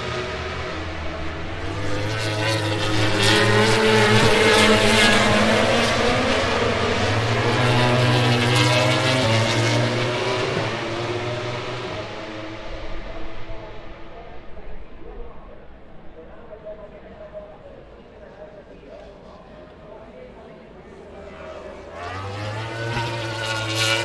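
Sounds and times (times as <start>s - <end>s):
racing motorcycles passing at high revs: 0.0s - 14.2s, 21.3s - 24.0s.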